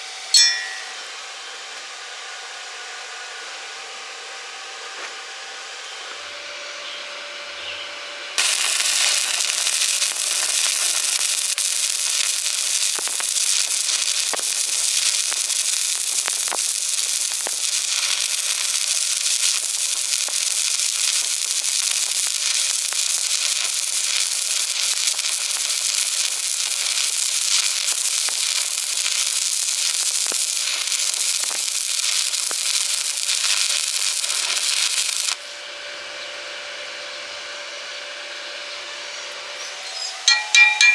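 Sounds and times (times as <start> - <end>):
welding arc crackling: 8.4 - 35.6.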